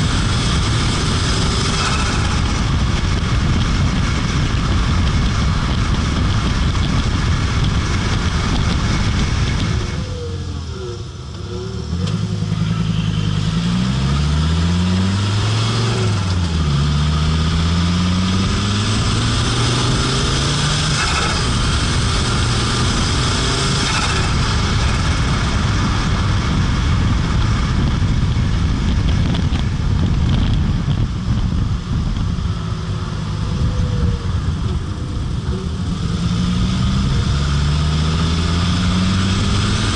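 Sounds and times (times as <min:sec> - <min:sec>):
car engine accelerating: 0:00.0 - 0:39.9
road and wind noise: 0:00.0 - 0:39.9.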